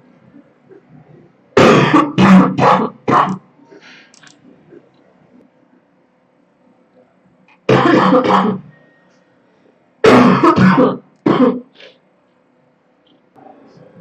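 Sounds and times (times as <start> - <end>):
girl coughing: 1.6 - 3.4, 7.7 - 8.7, 10.0 - 11.8.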